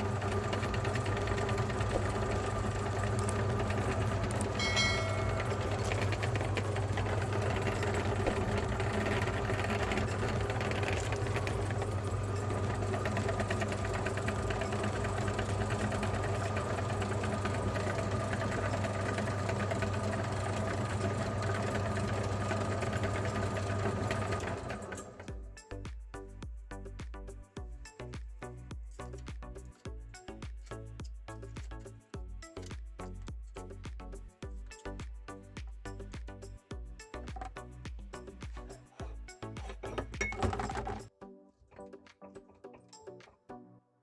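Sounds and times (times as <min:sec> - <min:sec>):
meat grinder motor humming: 0:00.0 - 0:25.3, 0:39.6 - 0:41.1.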